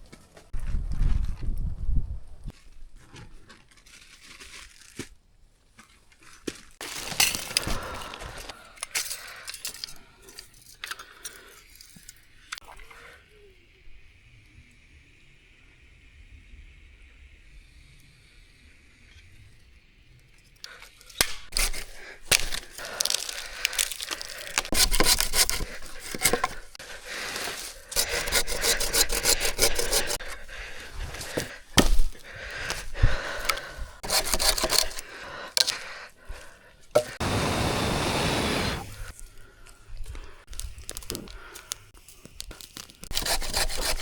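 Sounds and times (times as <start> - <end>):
dry wood cracking: 5.8 - 10.0, 20.6 - 37.2, 39.1 - 44.0
wood scraping and rasping: 21.5 - 36.0, 37.0 - 39.1, 42.6 - 44.0.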